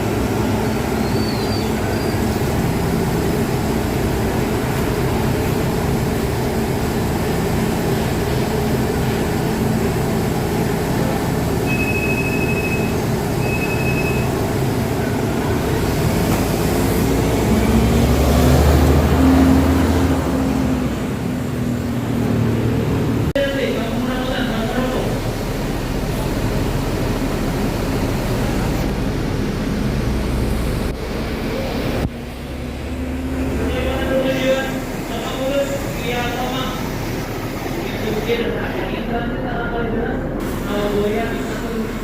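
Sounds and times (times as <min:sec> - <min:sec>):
bus engine passing: 0:00.0 - 0:42.0
rumble of heavy traffic: 0:00.0 - 0:42.0
short high electronic beeps: 0:11.7 - 0:14.3.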